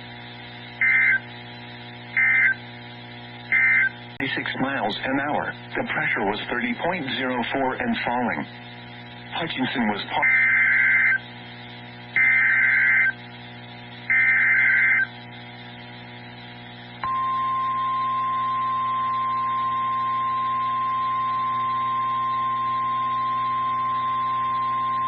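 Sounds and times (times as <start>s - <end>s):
warbling data bursts: 0.8s - 1.2s, 2.2s - 2.6s, 3.5s - 3.9s, 9.4s - 11.2s, 12.2s - 13.2s, 14.1s - 15.1s
steady alarm tone: 0.8s - 1.3s, 2.2s - 2.6s, 3.5s - 3.9s, 10.1s - 11.2s, 12.2s - 13.2s, 14.1s - 15.1s, 17.0s - 25.0s.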